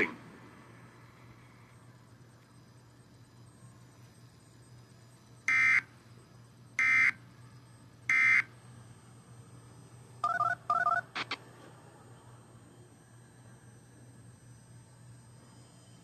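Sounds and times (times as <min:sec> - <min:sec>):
faint steady hum: 0:00.0 - 0:16.0
digital data tone bursts: 0:05.5 - 0:05.9.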